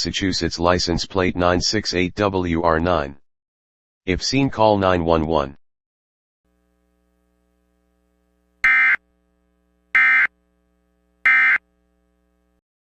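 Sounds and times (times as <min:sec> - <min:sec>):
digital data tone bursts: 0:08.6 - 0:09.0, 0:10.0 - 0:10.3, 0:11.3 - 0:11.6.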